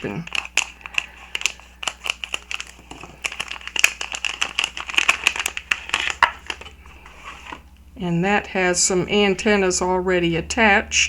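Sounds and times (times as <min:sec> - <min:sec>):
plastic bag crinkling: 0:00.0 - 0:07.6.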